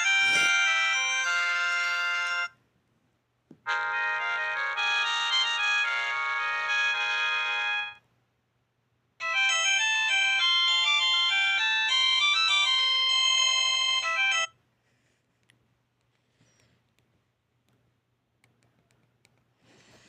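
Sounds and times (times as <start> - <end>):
electronic ringtone melody: 0.0 - 2.6, 3.7 - 8.0, 9.2 - 14.6.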